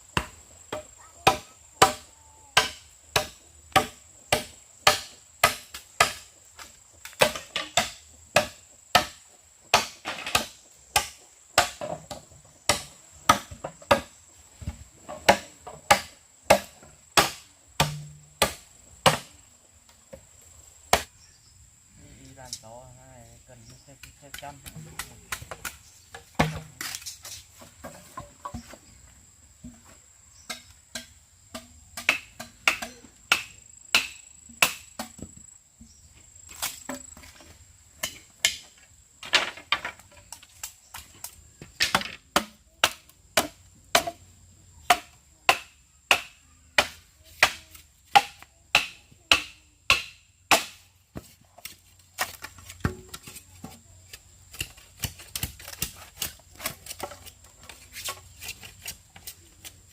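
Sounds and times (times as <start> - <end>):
chopping wood strikes: 0.2 - 2.0, 2.6 - 6.3, 7.0 - 19.4, 24.0 - 28.8, 30.5 - 35.4, 36.6 - 41.0, 41.6 - 44.2, 44.8 - 57.3.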